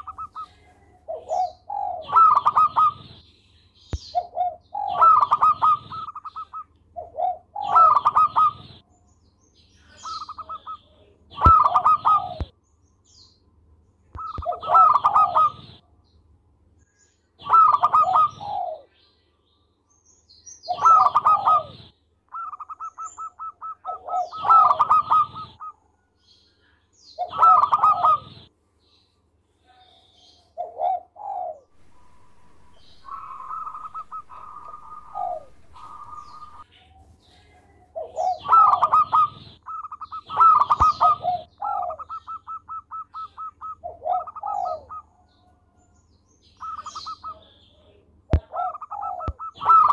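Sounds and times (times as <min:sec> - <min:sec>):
dove cooing: 0:00.0 - 0:03.2, 0:04.0 - 0:08.8, 0:09.9 - 0:12.5, 0:14.2 - 0:15.8, 0:17.4 - 0:18.9, 0:20.7 - 0:25.8, 0:27.2 - 0:28.5, 0:30.4 - 0:36.7, 0:37.4 - 0:45.4, 0:46.6 - 0:49.9.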